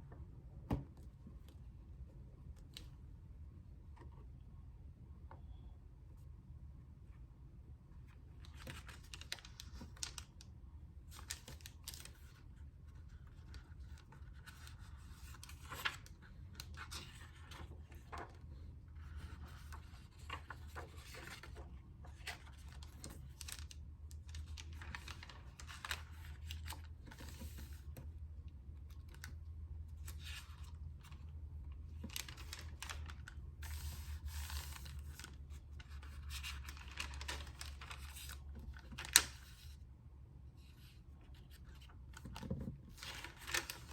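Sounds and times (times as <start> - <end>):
faint low hum: 0.0 - 43.9
paper pages rustling and crinkling: 8.1 - 10.5, 11.1 - 28.1, 28.8 - 39.8, 40.6 - 43.9.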